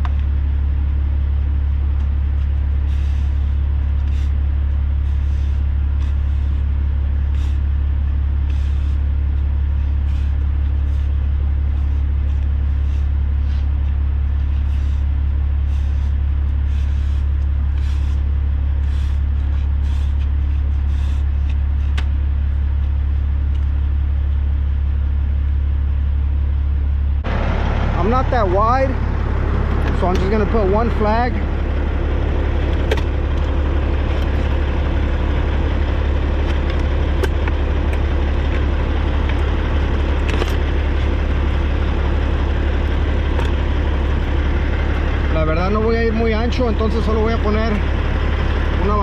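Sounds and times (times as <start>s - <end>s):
diesel engine idling: 0.0s - 49.0s.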